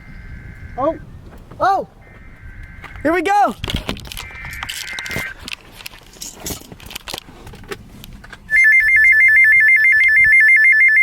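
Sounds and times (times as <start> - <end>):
emergency alert warble tone: 8.5 - 11.0.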